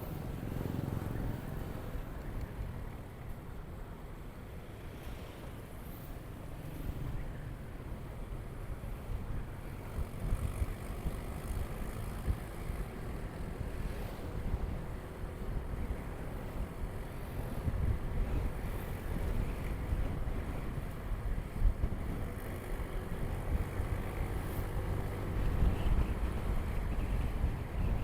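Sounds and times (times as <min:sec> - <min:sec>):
wind buffeting microphone: 0:09.1 - 0:28.0.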